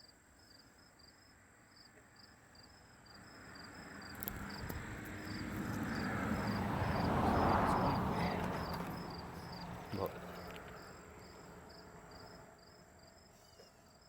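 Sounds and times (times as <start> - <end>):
insects chirping: 0.0 - 14.0.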